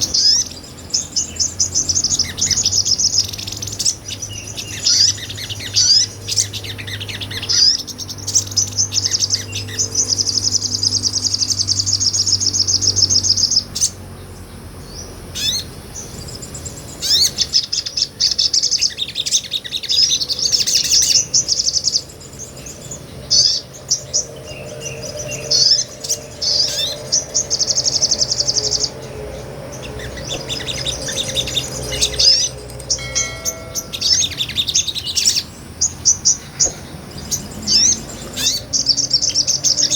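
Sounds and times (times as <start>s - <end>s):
bird trilling and chirping: 14.9s - 39.9s.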